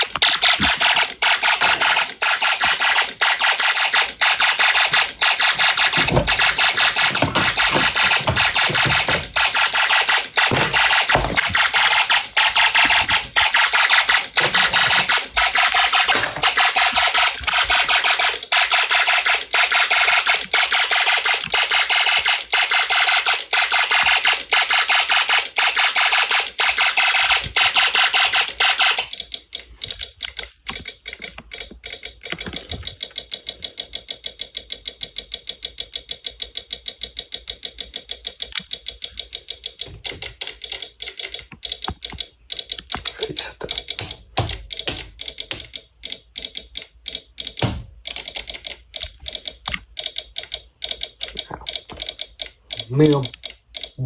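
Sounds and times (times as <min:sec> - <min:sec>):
harsh buzzy electronic alarm tone: 0:00.0 - 0:29.1
rapid electronic clicks: 0:00.0 - 0:54.0.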